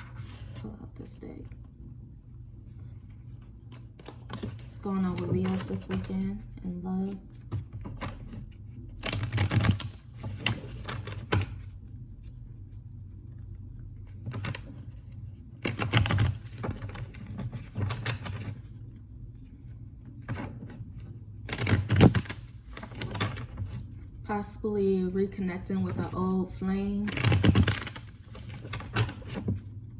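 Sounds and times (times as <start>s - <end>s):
cards being shuffled by hand: 0.0s - 24.2s, 27.0s - 29.9s
steady low hum: 0.0s - 29.9s.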